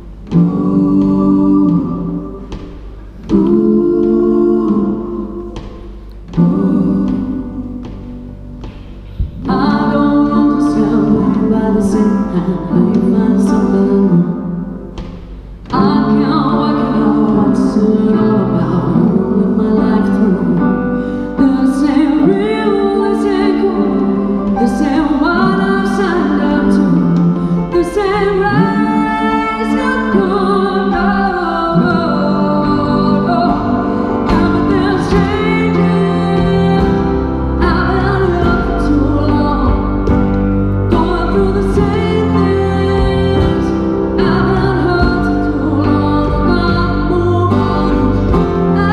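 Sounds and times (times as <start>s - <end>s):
woman singing: 0.0s - 8.3s, 9.0s - 48.9s
live band playing pop song: 0.0s - 48.9s.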